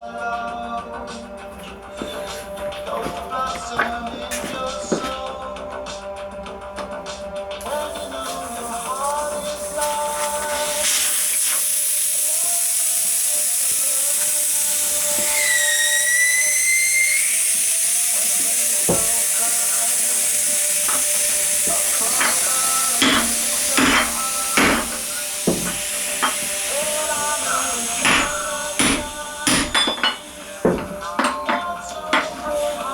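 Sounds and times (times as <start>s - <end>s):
faint music: 0.0s - 32.9s
steady hiss: 1.1s - 5.4s, 7.5s - 32.9s
hammer blows on steel: 15.0s - 32.9s.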